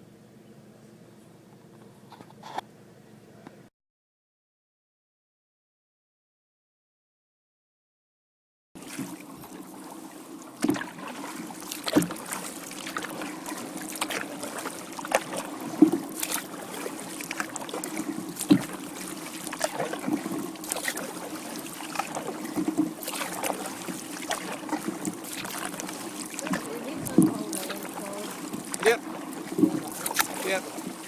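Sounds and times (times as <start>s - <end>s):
paddle blades splashing water: 8.8s - 31.0s
paddle knocking kayak: 8.8s - 31.0s.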